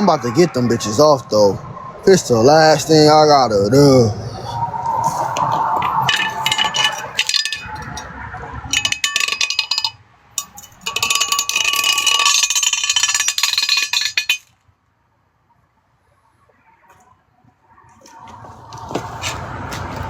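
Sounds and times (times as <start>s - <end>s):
lug wrench clinking on lug nuts: 5.4s - 8.1s, 8.7s - 14.6s.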